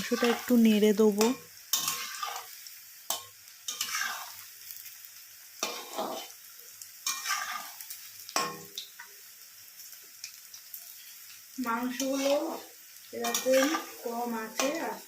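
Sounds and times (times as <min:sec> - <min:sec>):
spatula scraping a pan: 0:00.0 - 0:00.6, 0:01.2 - 0:04.8, 0:05.6 - 0:06.4, 0:07.0 - 0:08.8, 0:11.8 - 0:15.0
chicken sizzling in hot oil: 0:00.0 - 0:15.0.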